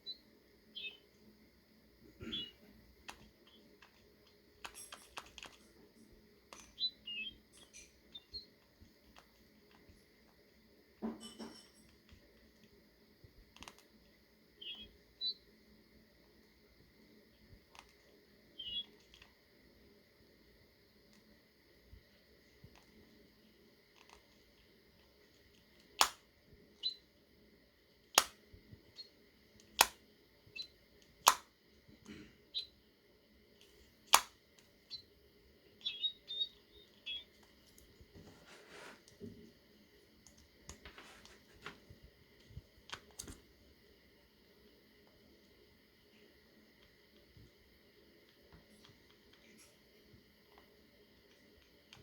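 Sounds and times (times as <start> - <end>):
earbuds clicking: 25.9 - 26.3, 28.2 - 28.4, 29.6 - 30.0, 31.2 - 31.5, 34.1 - 34.4.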